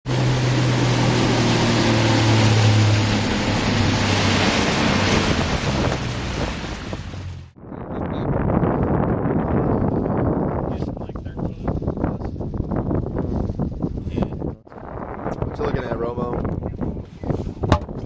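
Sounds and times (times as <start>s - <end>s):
boat engine hum: 0.0s - 7.6s
rush of wind and water: 0.0s - 18.0s.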